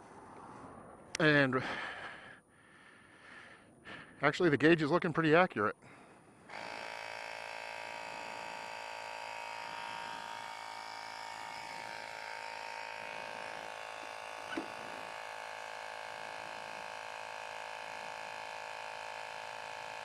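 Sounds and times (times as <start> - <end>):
electric compressor buzzing: 6.5 - 20.0.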